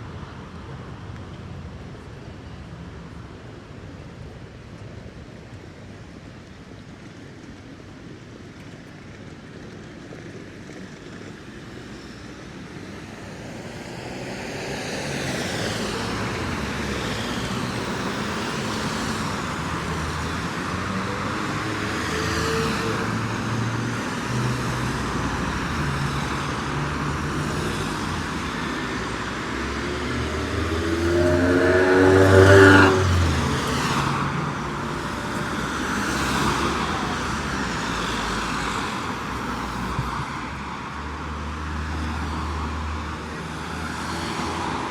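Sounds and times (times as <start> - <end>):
street traffic: 0.0 - 44.9
motor vehicle engine approaching: 13.9 - 40.7.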